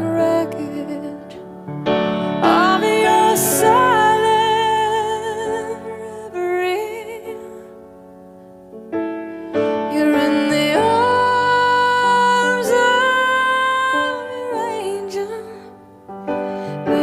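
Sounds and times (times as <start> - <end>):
slow song with piano and singing: 0.0 - 17.0.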